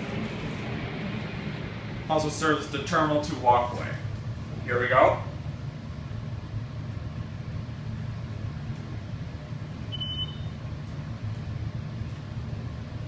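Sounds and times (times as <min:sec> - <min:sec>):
elevator hydraulic hum: 0:00.0 - 0:13.0
short high beep: 0:09.9 - 0:10.6.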